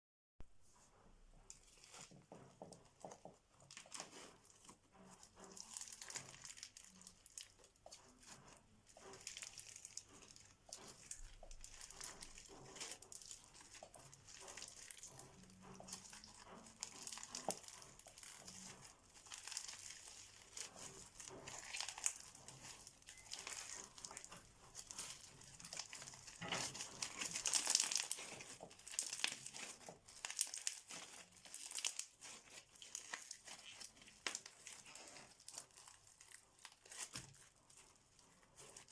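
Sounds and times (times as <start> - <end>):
slime squeezed by hand crackling: 9.2 - 38.9.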